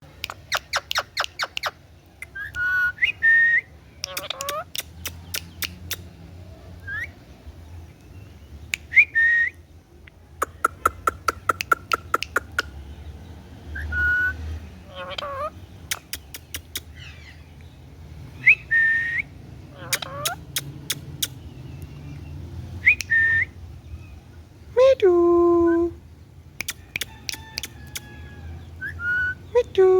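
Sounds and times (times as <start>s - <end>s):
parrot rapid clicks: 4.0s - 6.0s, 15.9s - 16.9s
parrot warbling calls: 4.1s - 4.7s, 13.8s - 15.6s, 19.0s - 21.2s
parrot whistling: 18.5s - 20.3s, 22.8s - 23.5s, 28.8s - 29.4s.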